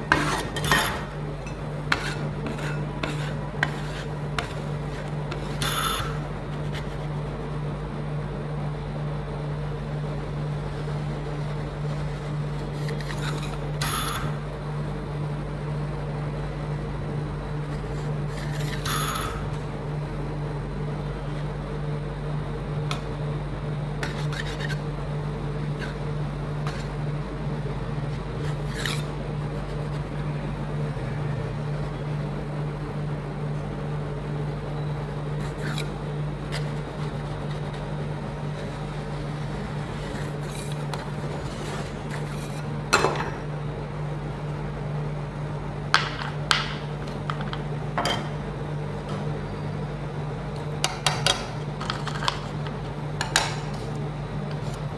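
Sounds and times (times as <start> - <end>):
metal spatulas scraping steel plate: 0.0 - 6.4, 12.7 - 14.4, 17.9 - 19.6, 28.4 - 30.0, 35.4 - 37.7, 39.9 - 42.7
refrigeration unit humming: 0.0 - 54.9.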